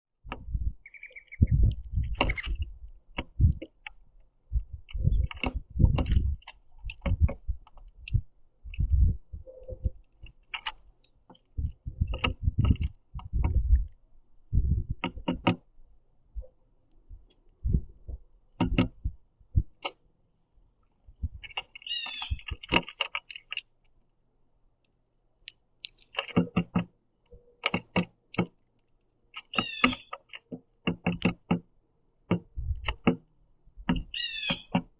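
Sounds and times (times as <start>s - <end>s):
birds pecking seeds on wood: 0.2s - 34.9s
short high bird chirp: 0.8s - 1.5s.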